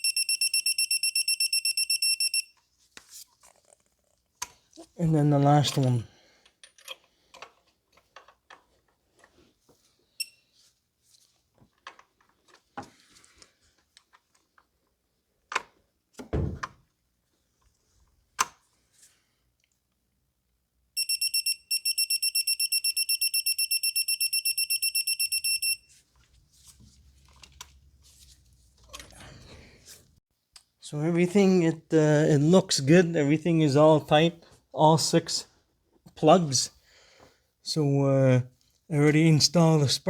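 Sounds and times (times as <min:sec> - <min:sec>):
torque wrench beeping: 0:00.0 - 0:02.5, 0:21.0 - 0:25.8.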